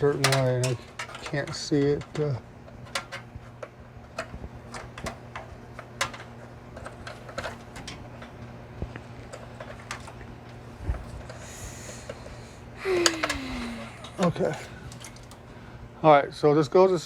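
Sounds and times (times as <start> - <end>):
computer parts clicking: 0.0 - 3.3
steady low hum: 0.0 - 17.0.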